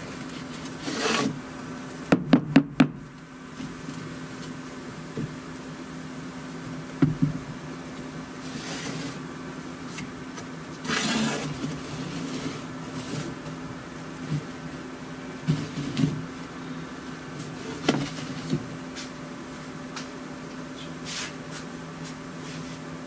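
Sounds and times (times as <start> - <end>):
steady low hum: 0.0 - 23.0
hand sanding rasping strokes: 0.3 - 1.4, 8.4 - 9.3, 10.8 - 13.5.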